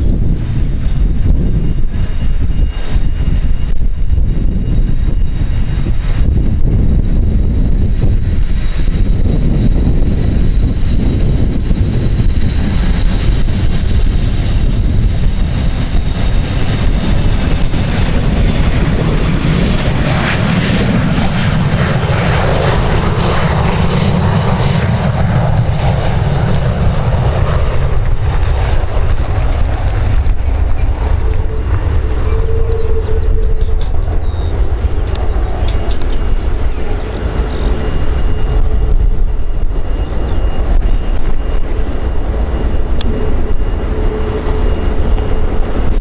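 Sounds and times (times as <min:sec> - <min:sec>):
airplane engines passing: 0:00.0 - 0:46.0
wind rumble on microphone: 0:00.0 - 0:46.0.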